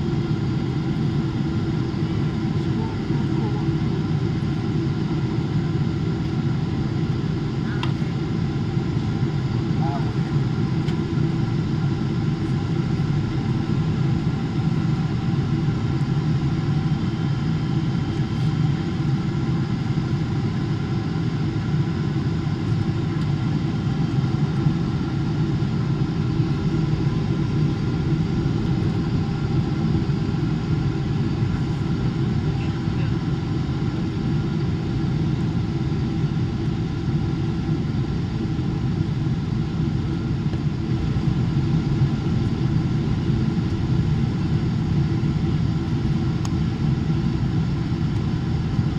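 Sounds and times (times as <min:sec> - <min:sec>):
airliner cabin roar: 0:00.0 - 0:48.9.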